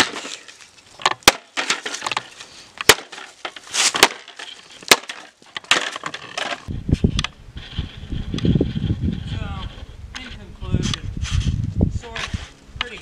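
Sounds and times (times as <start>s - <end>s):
wood cracking and splintering: 0.0s - 6.7s
scraping and rustling: 0.0s - 12.6s.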